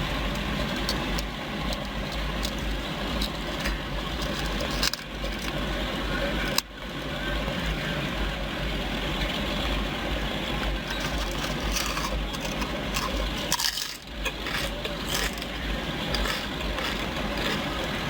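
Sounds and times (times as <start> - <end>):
low steady hum: 0.0 - 18.0
chips crunching: 2.1 - 5.6, 10.8 - 18.0.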